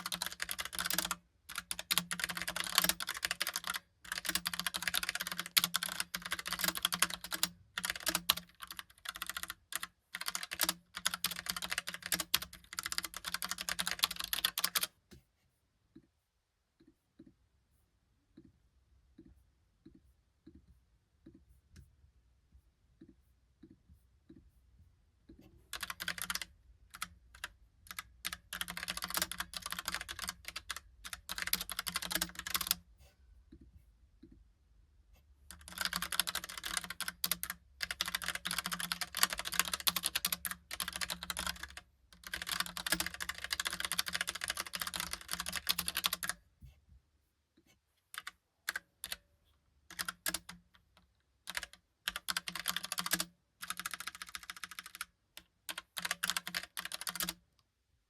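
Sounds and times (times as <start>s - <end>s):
mechanical keyboard typing: 0.0s - 14.9s, 25.7s - 32.8s, 35.5s - 46.4s, 48.2s - 49.2s, 49.9s - 50.8s, 51.4s - 57.4s.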